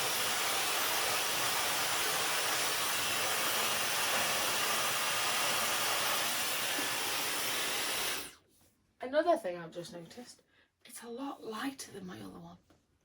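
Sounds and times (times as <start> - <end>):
hair dryer blowing: 0.0 - 8.4.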